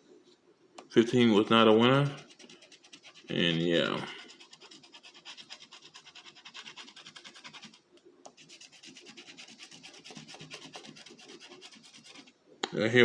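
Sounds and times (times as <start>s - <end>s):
coin scratching lottery ticket: 2.0s - 7.8s, 8.4s - 12.3s.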